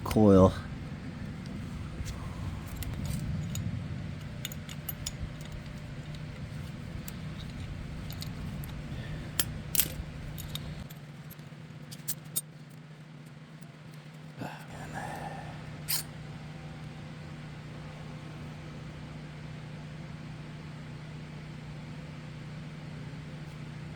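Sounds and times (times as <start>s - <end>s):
steady low hum: 0.0s - 12.4s, 13.0s - 23.9s
small metal parts clicking and rattling: 2.0s - 13.7s.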